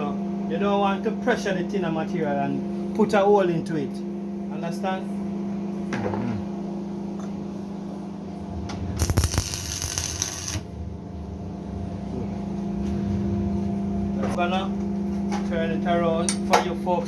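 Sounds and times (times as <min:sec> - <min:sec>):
electrical hum: 0:03.5 - 0:16.1
welding arc crackling: 0:09.0 - 0:10.7.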